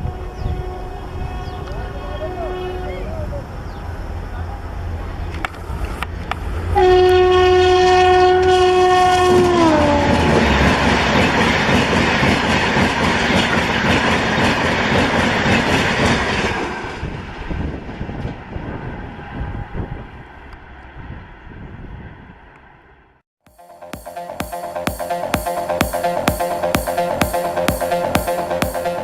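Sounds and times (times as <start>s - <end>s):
train horn: 0.0s - 3.2s, 6.7s - 11.0s
train coaches passing: 0.0s - 21.6s.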